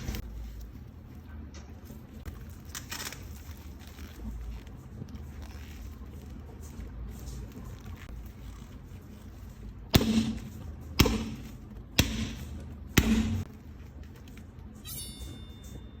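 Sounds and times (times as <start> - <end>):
boxing gloves thumping: 10.0 - 13.5.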